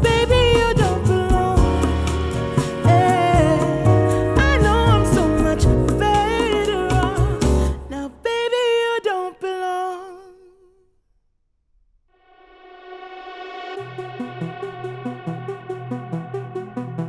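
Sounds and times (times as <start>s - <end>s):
next music track: 0.0s - 8.0s
pop song with singing: 0.0s - 10.8s.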